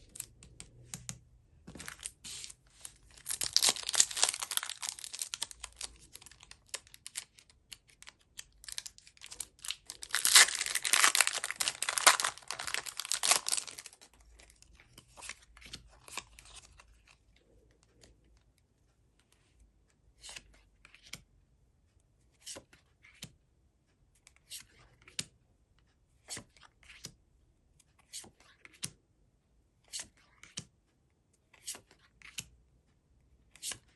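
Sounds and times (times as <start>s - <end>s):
card packaging tearing and crinkling: 3.1s - 14.1s.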